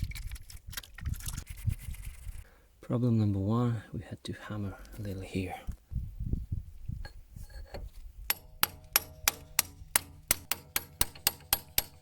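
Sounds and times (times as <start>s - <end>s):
hammer tapping on steel: 8.3s - 12.0s.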